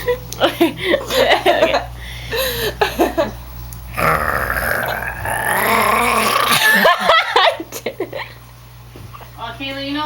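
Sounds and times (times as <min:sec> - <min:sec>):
person croaking from the throat: 0:03.9 - 0:07.1.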